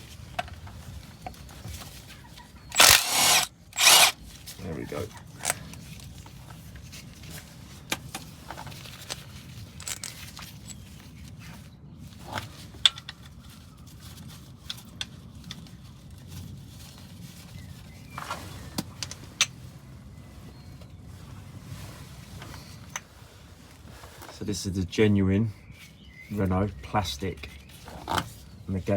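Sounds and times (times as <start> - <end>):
clicks of hand tools and metal: 2.7 - 4.2, 5.4 - 5.6.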